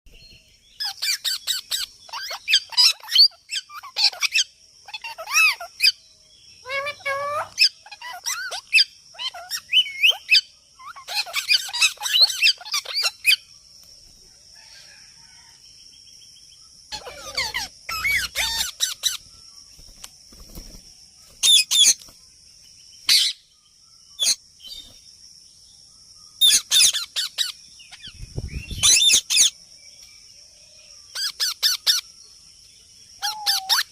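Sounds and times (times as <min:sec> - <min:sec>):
parrot chirping and squawking: 0:00.8 - 0:06.0, 0:06.6 - 0:13.4, 0:16.9 - 0:19.2, 0:21.4 - 0:22.0, 0:23.1 - 0:23.4, 0:26.4 - 0:28.1, 0:28.8 - 0:29.6, 0:31.1 - 0:32.0, 0:33.2 - 0:33.9.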